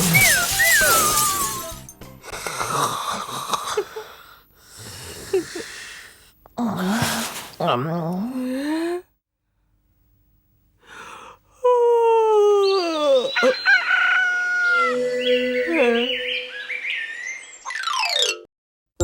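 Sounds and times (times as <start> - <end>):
faint breath: 3.8 - 7.6, 10.8 - 11.5
bird-like chirps and glides: 12.7 - 18.5.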